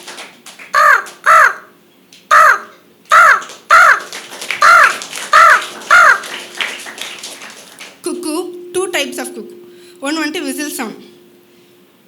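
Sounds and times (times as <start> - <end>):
person imitating crow caws: 0.8 - 1.7, 2.3 - 6.3.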